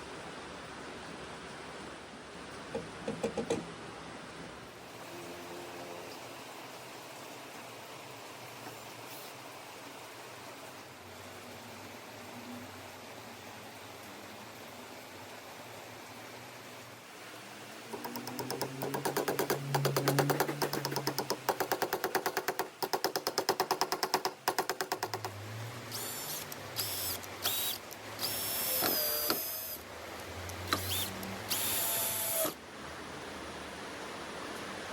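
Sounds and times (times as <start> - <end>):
power drill whining: 25.9 - 29.8, 30.5 - 32.6.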